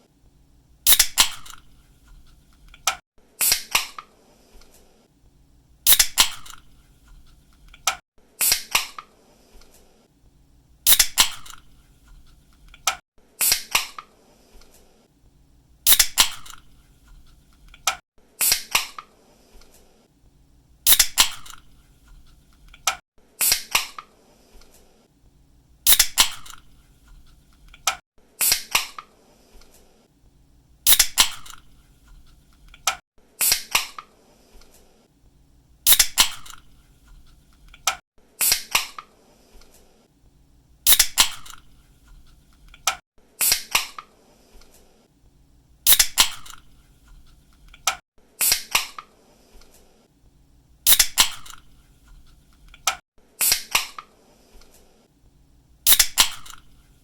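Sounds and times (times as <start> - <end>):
can pull tab opening with fizz: 0.9 - 1.6, 5.9 - 6.6, 10.9 - 11.6, 15.9 - 16.7, 20.9 - 21.7, 25.9 - 26.6, 30.9 - 31.6, 35.9 - 36.7, 40.9 - 41.6, 45.9 - 46.6, 50.9 - 51.6, 55.9 - 56.7.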